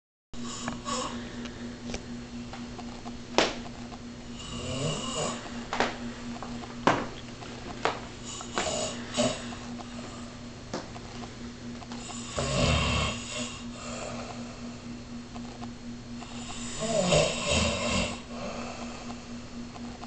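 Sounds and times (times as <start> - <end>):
long rasping snore: 0.4 - 1.2, 4.3 - 5.5, 8.2 - 10.4, 12.0 - 14.8, 16.2 - 19.2.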